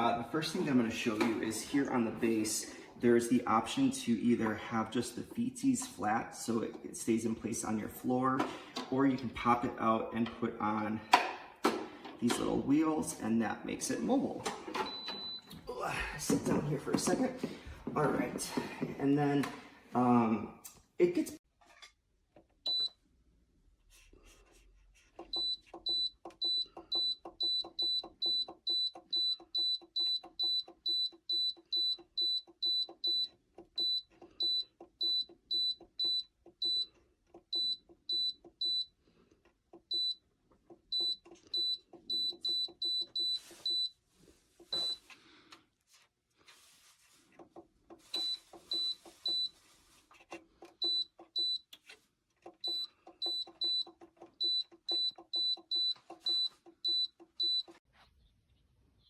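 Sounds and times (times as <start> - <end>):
heater control beeps: 14.7 - 15.6, 22.7 - 23.0, 25.3 - 36.9, 37.5 - 38.9, 39.9 - 40.2, 40.9 - 44.0, 44.8 - 45.0, 48.2 - 49.6, 50.8 - 51.7, 52.6 - 57.8
rustling handling noise: 42.9 - 53.1.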